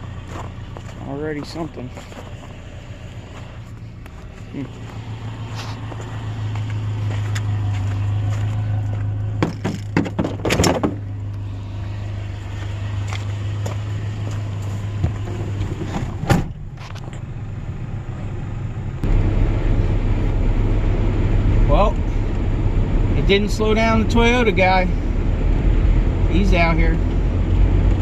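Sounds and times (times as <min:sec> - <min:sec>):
vehicle engine hum: 0:00.0 - 0:28.0
sharp clicks and knocks: 0:09.4 - 0:11.0.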